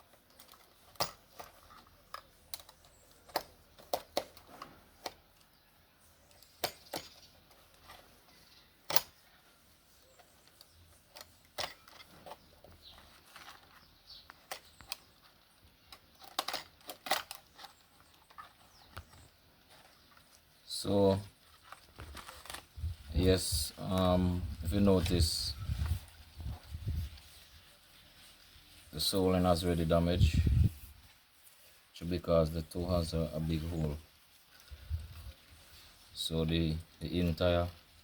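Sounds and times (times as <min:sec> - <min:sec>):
hand tools clicking and tapping: 0:00.0 - 0:05.6, 0:06.2 - 0:09.4, 0:10.1 - 0:20.5.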